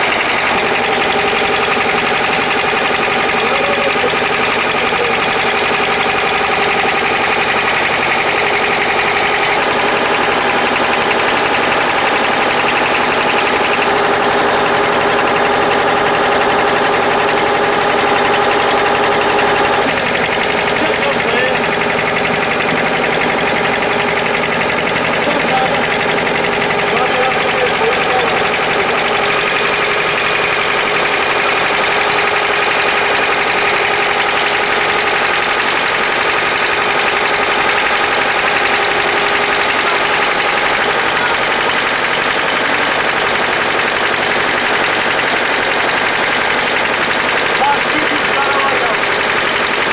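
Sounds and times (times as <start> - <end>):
engine droning: 0.0 - 49.9.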